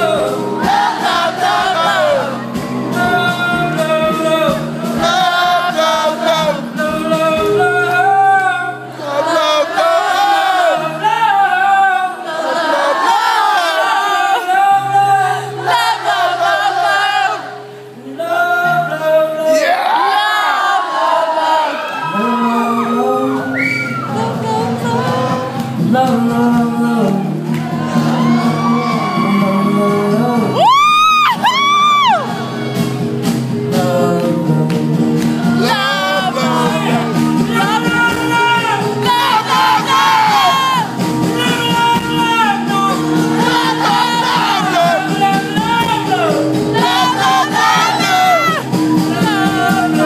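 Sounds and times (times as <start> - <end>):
crowd voices and whoops: 0.0 - 5.8, 19.5 - 25.3, 27.2 - 33.4, 35.2 - 50.0
live band music with singing: 0.0 - 50.0.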